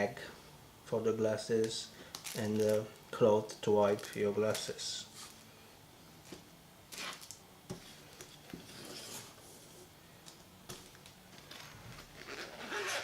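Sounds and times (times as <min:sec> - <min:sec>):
packaging rustling: 0:02.1 - 0:03.0.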